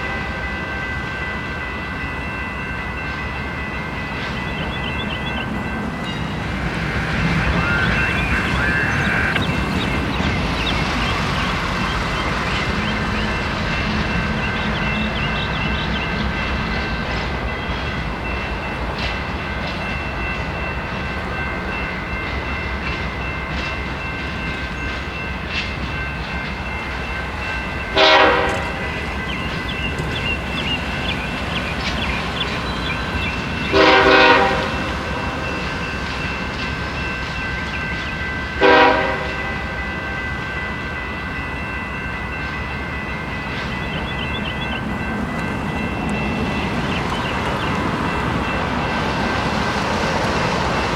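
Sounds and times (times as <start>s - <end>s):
train rumbling by: 0.0s - 50.9s
steady high tones: 3.5s - 15.7s
locomotive air horn: 28.0s - 29.0s, 33.7s - 35.6s, 38.6s - 39.8s.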